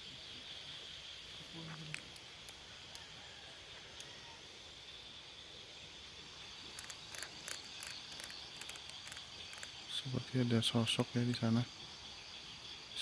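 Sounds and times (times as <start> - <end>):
crickets trilling: 0.0 - 13.0
sharp crackling clicks: 1.8 - 3.1, 6.7 - 9.9.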